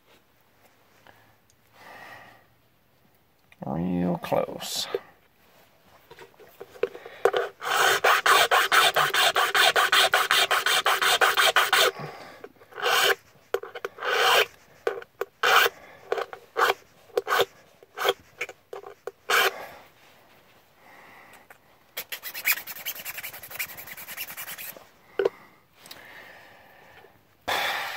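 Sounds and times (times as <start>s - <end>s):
hand file scraping a key: 6.6s - 19.6s, 22.0s - 25.3s.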